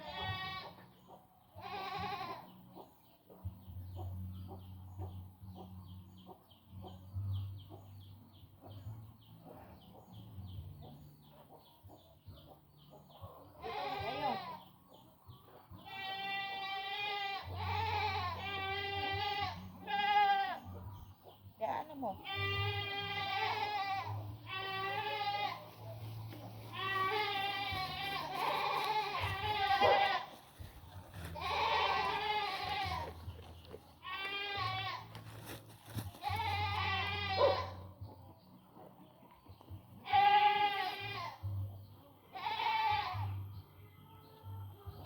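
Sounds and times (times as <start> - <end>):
goats bleating: 0.0 - 0.8, 1.6 - 2.5, 13.6 - 14.6, 15.9 - 20.6, 22.2 - 25.8, 26.6 - 35.6, 36.2 - 37.8, 40.0 - 41.4, 42.3 - 43.3.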